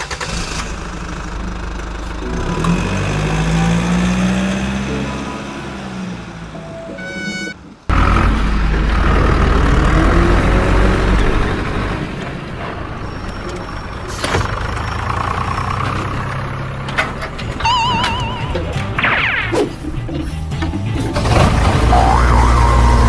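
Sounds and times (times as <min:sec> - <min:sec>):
low vehicle engine rumble: 0:00.0 - 0:19.0
warbling beep: 0:06.6 - 0:07.6, 0:17.6 - 0:19.7.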